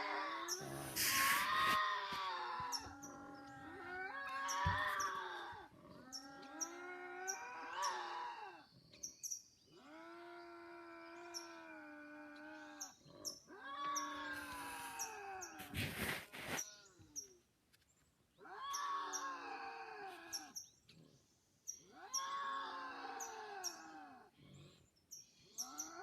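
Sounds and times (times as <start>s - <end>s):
creature wailing cries: 0.0s - 5.6s.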